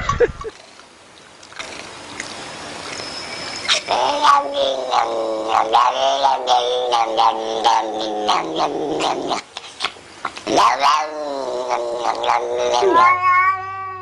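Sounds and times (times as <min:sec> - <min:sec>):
cat yowling: 0:03.7 - 0:09.1, 0:10.6 - 0:14.0.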